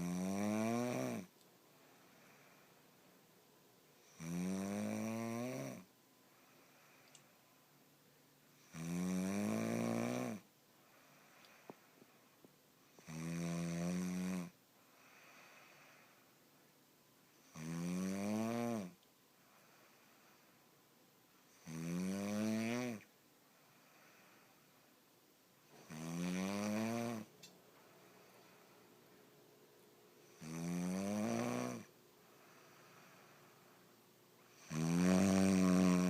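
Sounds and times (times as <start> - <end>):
person snoring: 0.0 - 1.3, 4.0 - 5.9, 8.6 - 10.4, 12.9 - 16.2, 17.4 - 19.0, 21.5 - 23.1, 25.8 - 27.3, 30.2 - 33.7, 34.4 - 36.0
quiet breathing: 0.0 - 17.7, 18.9 - 21.8, 22.8 - 36.0.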